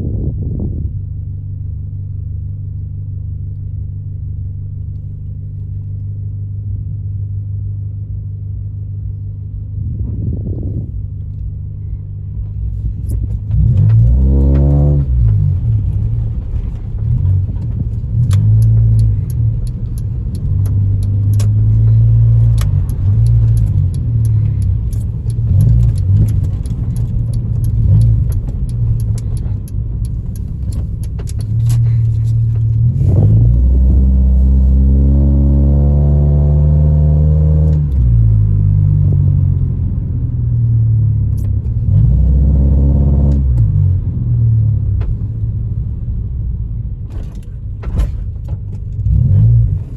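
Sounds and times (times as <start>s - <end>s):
light clicking and rattling: 15.2s - 32.9s.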